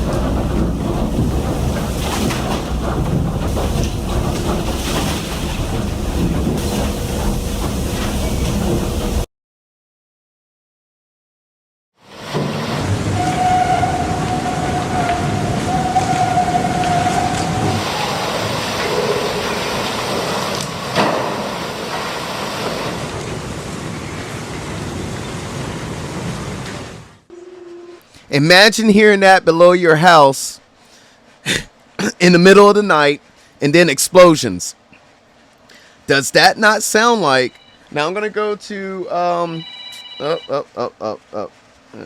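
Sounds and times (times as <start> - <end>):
steady noisy roar: 0.0 - 9.2, 12.1 - 27.3
faint tone: 27.3 - 28.0, 37.2 - 37.9, 39.4 - 40.7.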